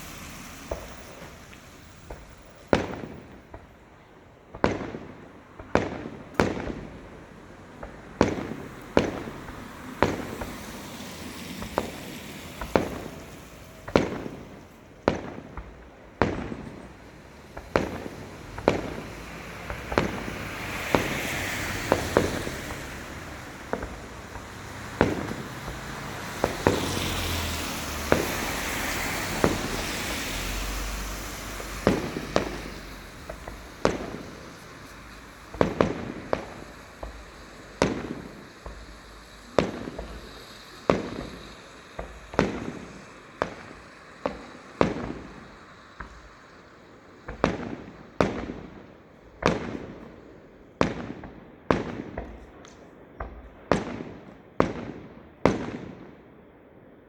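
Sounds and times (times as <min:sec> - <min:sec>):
broad rushing noise: 0:00.0 - 0:03.2, 0:16.6 - 0:46.0
fireworks booming: 0:00.0 - 0:56.4.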